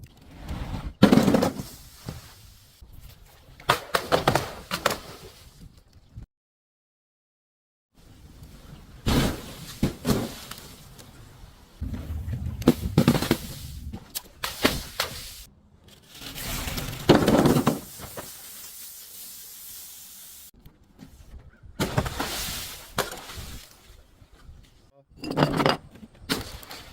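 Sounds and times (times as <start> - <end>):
low rumbling noise: 11.8 - 14.4.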